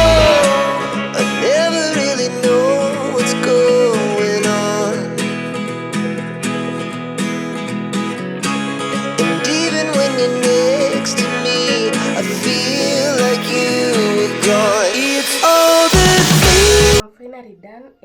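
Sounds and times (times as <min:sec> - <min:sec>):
melodic vocal-like line: 0:00.0 - 0:05.1, 0:09.2 - 0:17.1
acoustic guitar strumming: 0:00.0 - 0:17.0.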